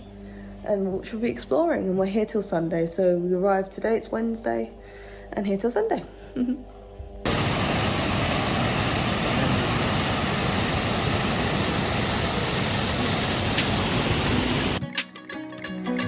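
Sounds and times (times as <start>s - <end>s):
loud broadband rushing noise: 7.3s - 14.8s.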